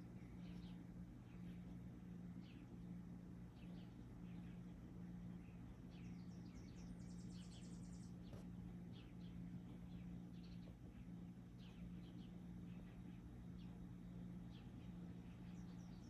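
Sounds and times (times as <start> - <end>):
birds chirping faintly: 0.0 - 16.0
steady low hum: 0.0 - 16.0.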